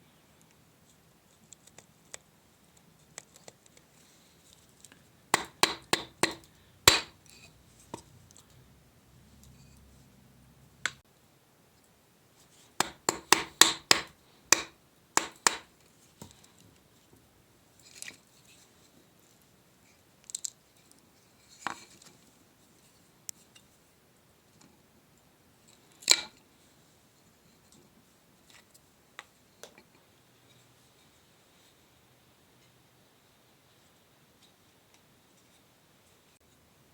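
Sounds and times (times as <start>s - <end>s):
hand tool clicks and taps: 5.3s - 7.2s, 12.8s - 16.4s
knocks on wood: 5.4s - 7.1s, 12.8s - 15.7s.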